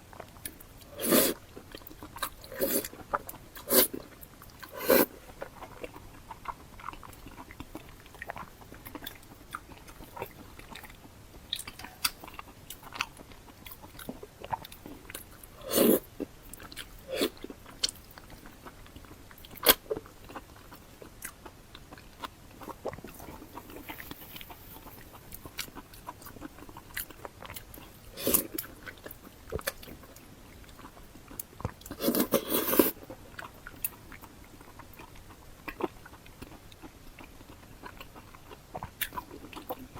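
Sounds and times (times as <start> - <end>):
cartilage crunching while chewing: 0.0 - 39.9.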